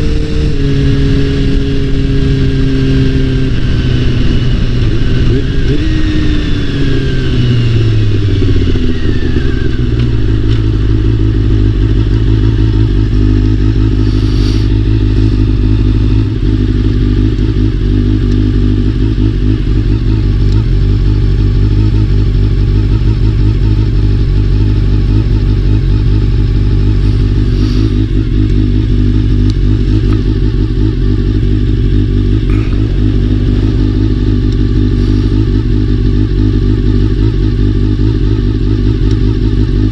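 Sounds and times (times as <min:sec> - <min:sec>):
motorcycle engine revving and idling: 0:00.0 - 0:39.9.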